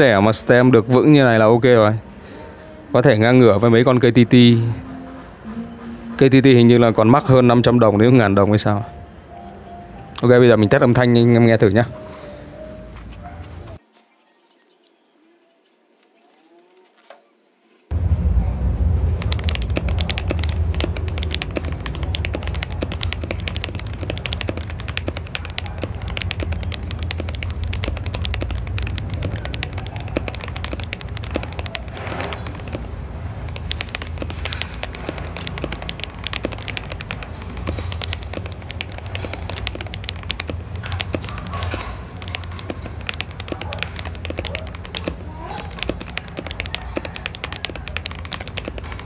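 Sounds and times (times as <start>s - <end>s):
low hum: 17.9s - 44.4s
mechanical keyboard typing: 19.2s - 49.0s.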